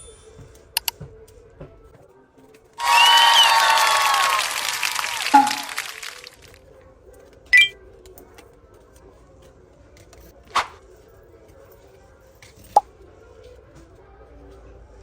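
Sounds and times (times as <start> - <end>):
applause: 2.8 - 6.6.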